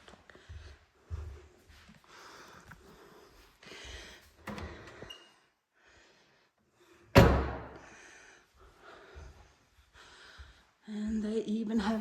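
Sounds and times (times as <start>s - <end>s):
door slamming shut: 7.2s - 7.8s.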